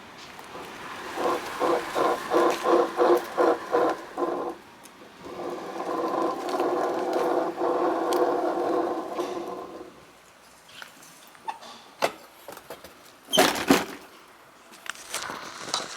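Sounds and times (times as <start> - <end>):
rattling scooter engine: 0.4 - 10.1.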